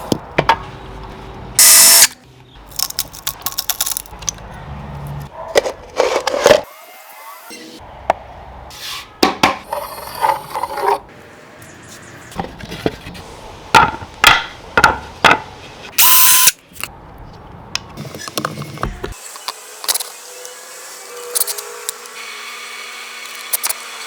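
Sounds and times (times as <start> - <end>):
power tool burst: 1.6 - 2.2.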